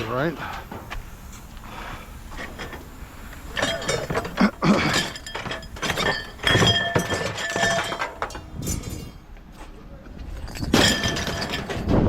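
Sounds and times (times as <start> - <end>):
scrap metal clanging onto pile: 3.5 - 9.3, 10.4 - 12.0.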